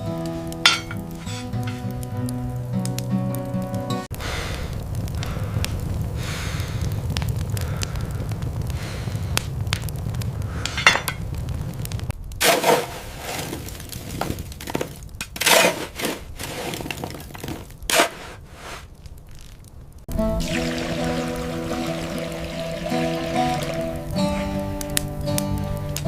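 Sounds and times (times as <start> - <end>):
hard objects clinking: 0.6 - 1.8, 10.7 - 11.2.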